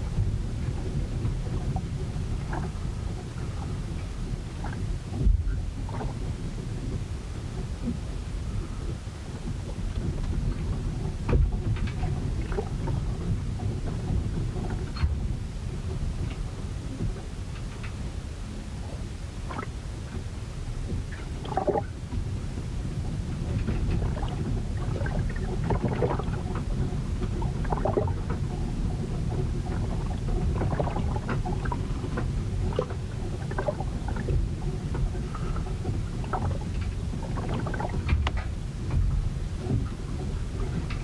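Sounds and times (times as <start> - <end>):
rumble of wind and waves: 0.0 - 41.0
splashes and knocks: 20.8 - 22.3, 23.3 - 41.0.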